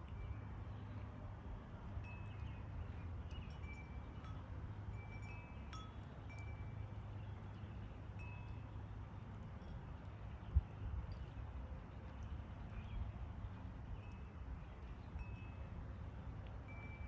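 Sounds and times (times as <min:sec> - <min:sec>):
wind chimes ringing: 0:03.4 - 0:06.9.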